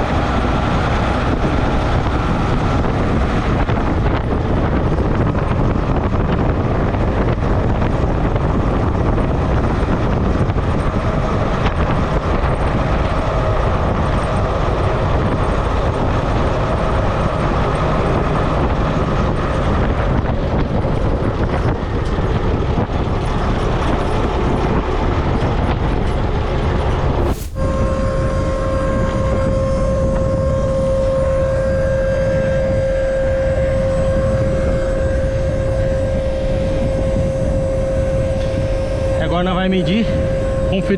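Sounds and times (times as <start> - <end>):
steady high whine: 26.8 - 40.9.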